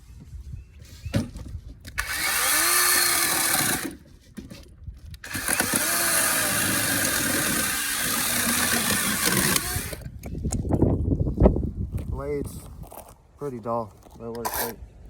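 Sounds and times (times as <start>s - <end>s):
electric motor high whine: 2.0s - 3.9s, 5.3s - 10.0s
cordless chainsaw running: 2.0s - 4.0s, 5.2s - 10.0s.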